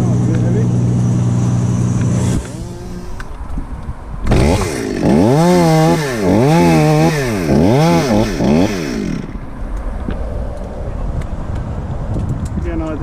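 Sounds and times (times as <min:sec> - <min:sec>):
chainsaw cutting wood: 0:02.0 - 0:03.3, 0:04.2 - 0:09.5.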